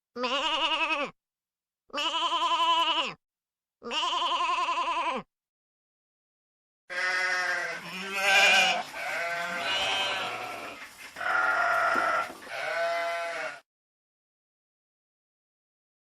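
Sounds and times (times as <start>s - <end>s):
sheep bleating: 0.2s - 1.2s, 1.9s - 3.2s, 3.8s - 5.3s, 6.9s - 13.7s.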